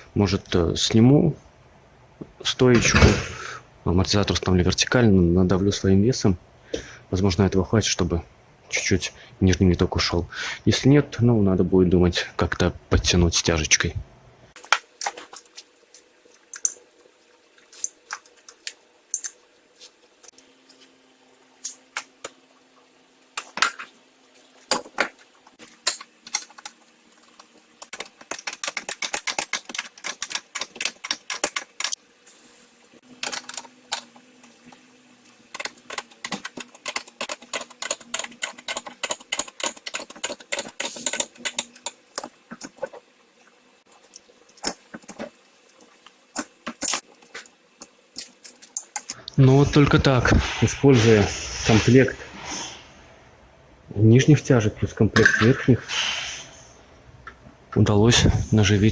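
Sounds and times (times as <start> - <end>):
rapid ratchet clicking: 27.8 - 32.0, 35.5 - 42.3.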